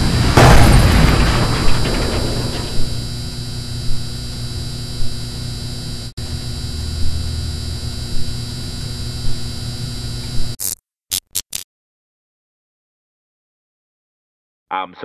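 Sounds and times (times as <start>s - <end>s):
electronic drone of held tones: 1.8s - 10.7s.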